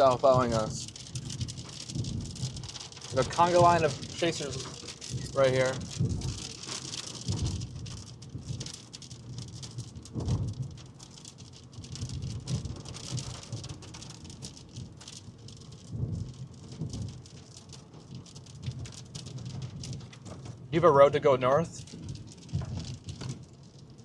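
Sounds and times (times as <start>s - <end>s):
low thuds: 0.0s - 8.8s
pattering on vehicle body: 0.0s - 20.8s, 21.8s - 24.0s
road and wind noise hiss: 0.0s - 24.0s.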